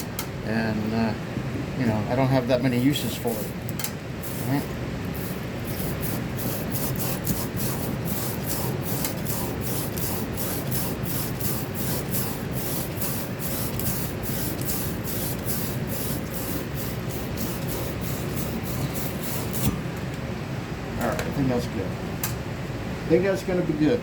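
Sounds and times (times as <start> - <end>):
steady low hum: 0.0 - 24.0
abrasive scrubbing copper pipe: 2.7 - 3.6, 4.2 - 19.8.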